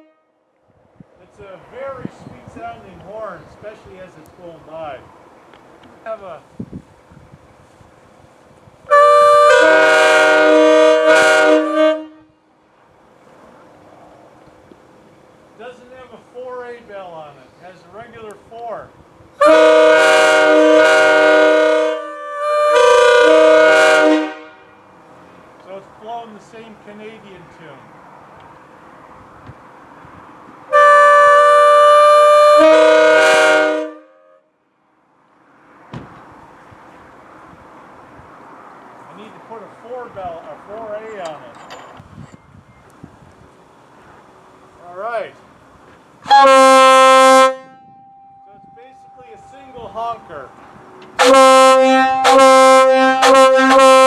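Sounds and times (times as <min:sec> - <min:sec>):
locomotive air horn chord: 0:00.0 - 0:00.4, 0:08.9 - 0:12.5, 0:19.4 - 0:25.0, 0:30.7 - 0:34.5, 0:46.2 - 0:50.6, 0:51.2 - 0:54.0.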